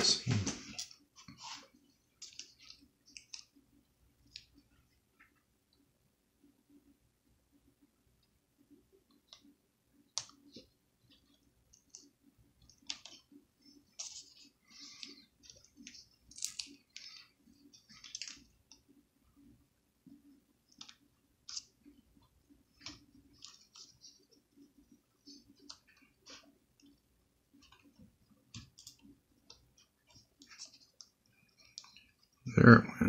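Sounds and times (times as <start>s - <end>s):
fingers handling laptop screen: 0.5s - 3.6s, 10.1s - 19.5s, 20.1s - 32.4s.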